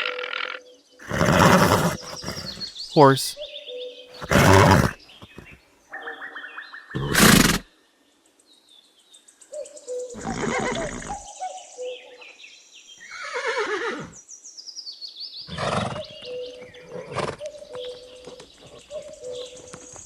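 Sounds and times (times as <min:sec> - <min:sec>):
birds chirping faintly: 0:00.6 - 0:20.0
horse neighing: 0:01.0 - 0:03.3, 0:04.2 - 0:05.6, 0:07.0 - 0:07.6, 0:10.2 - 0:11.2, 0:13.1 - 0:14.2.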